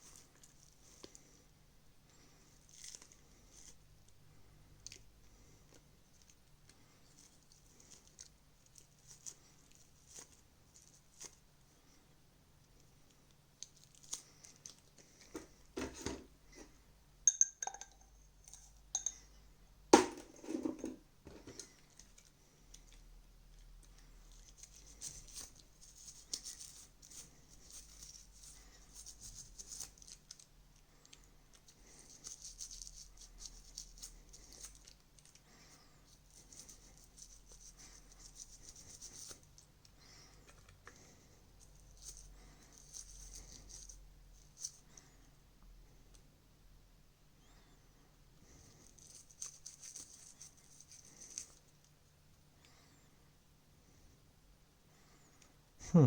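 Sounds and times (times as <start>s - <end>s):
scrubbing small plastic parts: 21.3s - 35.4s.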